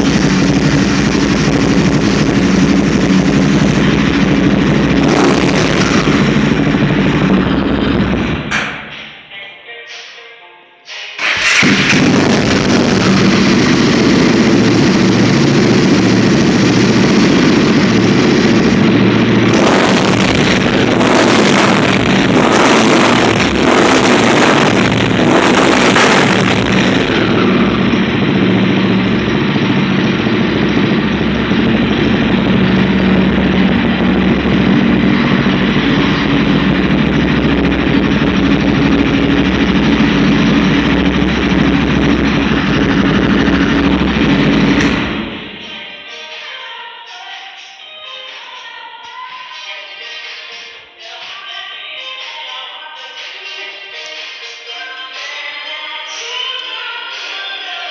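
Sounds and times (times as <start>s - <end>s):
motorcycle engine idling: 0.0s - 9.3s, 11.2s - 23.9s, 24.5s - 45.9s.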